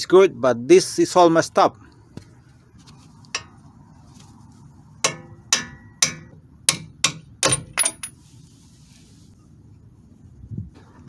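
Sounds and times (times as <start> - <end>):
hammer striking steel: 5.0 - 8.1.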